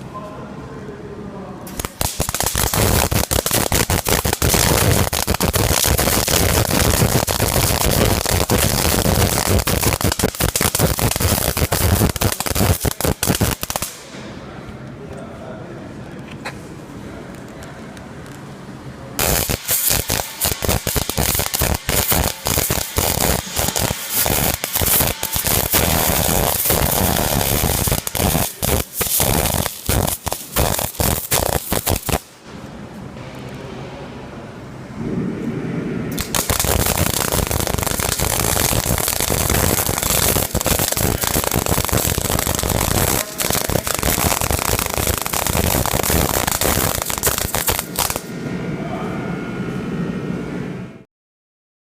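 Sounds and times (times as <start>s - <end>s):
welder arc crackling: 1.7s - 14.0s, 19.2s - 32.3s, 36.1s - 48.3s.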